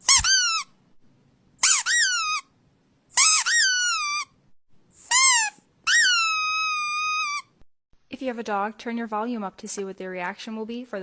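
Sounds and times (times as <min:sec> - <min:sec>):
squeaky toy squeaking: 0:00.0 - 0:00.8, 0:01.6 - 0:02.5, 0:03.2 - 0:04.4, 0:05.0 - 0:07.6.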